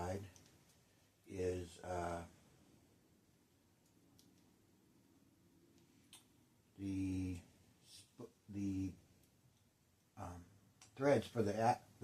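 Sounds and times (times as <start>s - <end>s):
faint light clicks: 0.2s - 0.8s, 3.8s - 4.5s.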